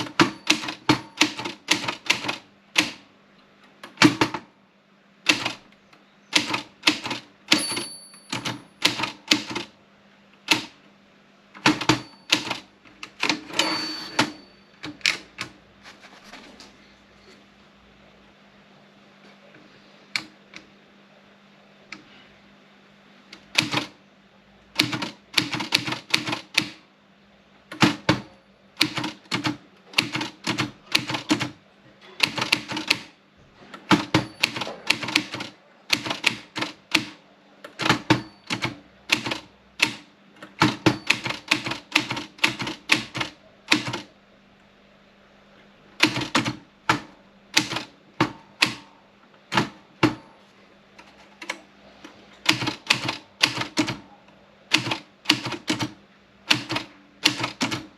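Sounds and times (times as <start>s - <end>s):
typewriter keys striking: 0.0s - 3.0s, 3.8s - 4.4s, 5.3s - 5.6s, 6.3s - 9.7s, 10.5s - 10.7s, 11.6s - 15.5s, 23.5s - 23.9s, 24.8s - 26.8s, 27.7s - 33.1s, 33.8s - 44.1s, 46.0s - 48.8s, 52.4s - 54.0s, 54.7s - 57.9s.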